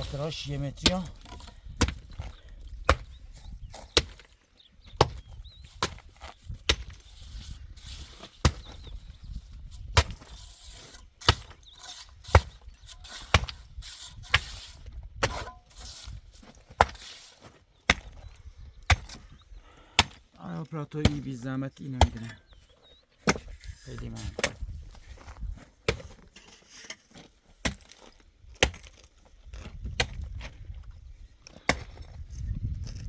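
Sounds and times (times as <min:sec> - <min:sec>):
hand tool striking masonry: 0:00.0 - 0:04.3, 0:05.0 - 0:08.9, 0:09.7 - 0:18.2, 0:18.8 - 0:19.2, 0:20.0 - 0:20.3, 0:21.0 - 0:21.4, 0:22.0 - 0:22.4, 0:23.2 - 0:24.8, 0:27.6 - 0:29.0.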